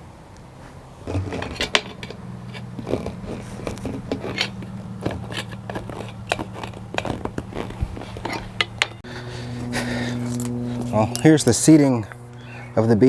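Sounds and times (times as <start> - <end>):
steady low hum: 0.0 - 13.0
tire tools clicking on metal rim: 0.3 - 9.0.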